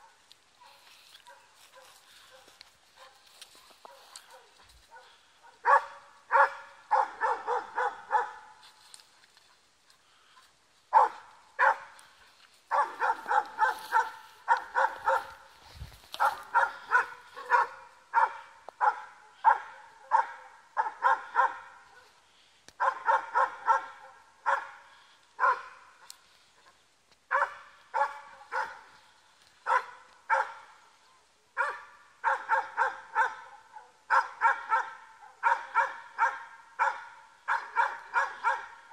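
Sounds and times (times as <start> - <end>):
dog barking: 0.0 - 8.6, 10.9 - 15.5, 16.1 - 22.2, 22.8 - 30.9, 31.6 - 38.9.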